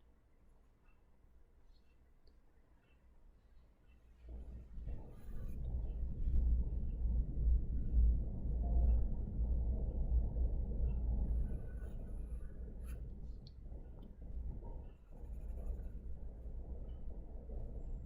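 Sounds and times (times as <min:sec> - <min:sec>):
low steady hum: 0:00.0 - 0:18.0
pencil scratching on paper: 0:15.1 - 0:16.3.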